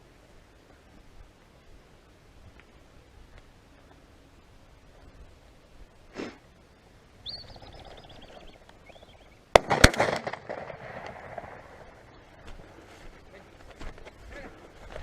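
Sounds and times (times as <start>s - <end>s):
bird whistling call: 7.2s - 9.4s
partridge wingbeats: 7.2s - 9.4s
shotgun shots: 9.5s - 12.0s.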